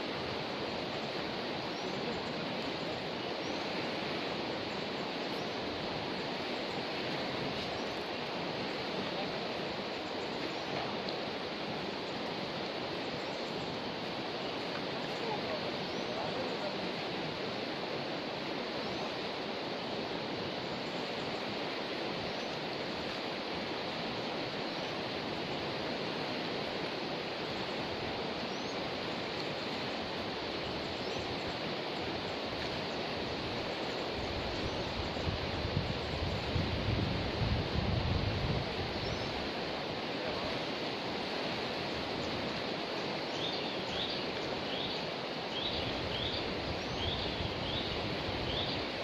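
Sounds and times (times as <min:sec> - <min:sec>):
river rushing: 0:00.0 - 0:49.0.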